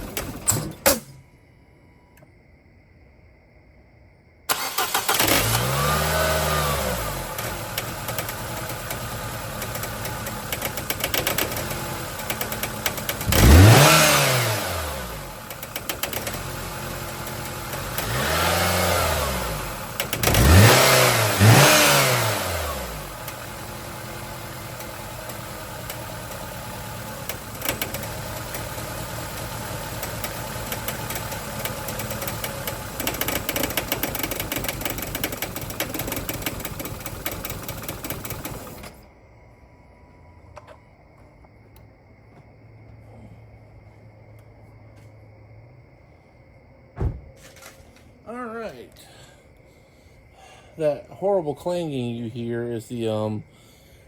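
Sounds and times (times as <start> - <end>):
car engine revving: 4.5 - 38.9.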